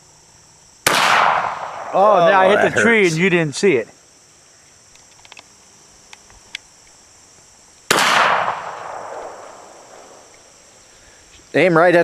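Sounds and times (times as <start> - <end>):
crickets chirping: 0.0 - 12.0
gunshot with echo: 0.9 - 1.9, 7.9 - 9.5
faint clicks: 4.7 - 5.5.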